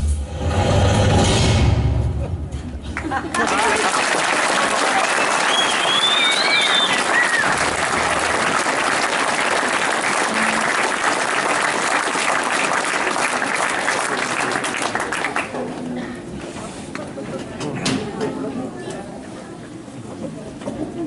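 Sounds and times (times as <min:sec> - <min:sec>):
audience applauding: 0:03.0 - 0:15.8
high whoop: 0:05.0 - 0:07.7.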